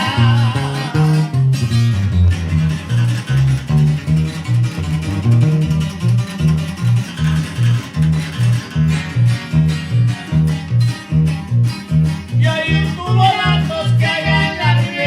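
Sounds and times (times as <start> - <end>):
guitars and bass playing: 0.0 - 15.0.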